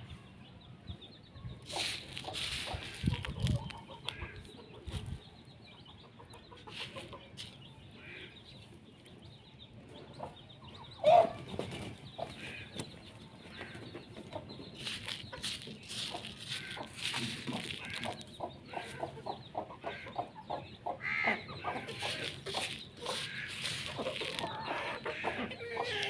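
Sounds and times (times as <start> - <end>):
chickens clucking: 0.0 - 26.0
chicken squawk: 11.0 - 11.4, 21.0 - 26.0.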